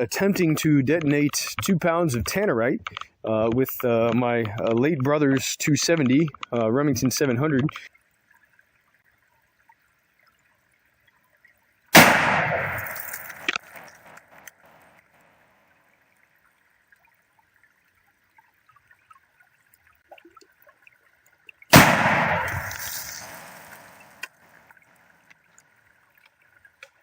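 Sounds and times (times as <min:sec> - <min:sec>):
rifle shot: 0:12.0 - 0:14.5, 0:21.7 - 0:24.2.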